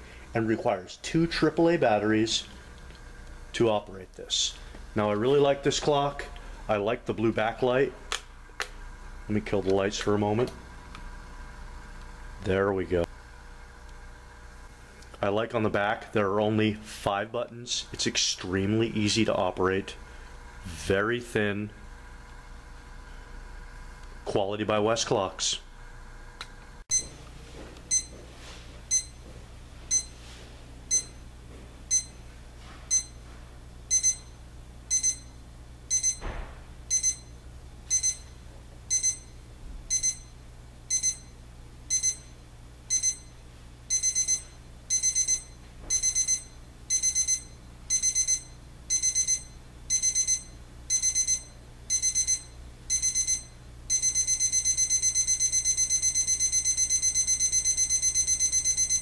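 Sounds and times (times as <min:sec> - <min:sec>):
alarm clock beeping: 0:26.9 - 0:27.1, 0:27.9 - 0:28.2, 0:28.9 - 0:29.2, 0:29.9 - 0:30.2, 0:30.9 - 0:31.2, 0:31.9 - 0:32.2, 0:32.9 - 0:33.2, 0:33.9 - 0:59.0.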